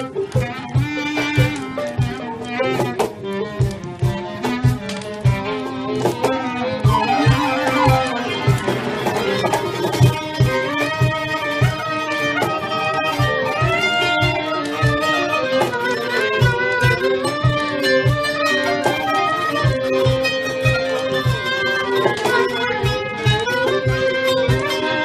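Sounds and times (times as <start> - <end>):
plucked lutes: 0.0 - 25.0
violin sliding melody: 0.0 - 25.0
steady low beat: 6.4 - 15.3.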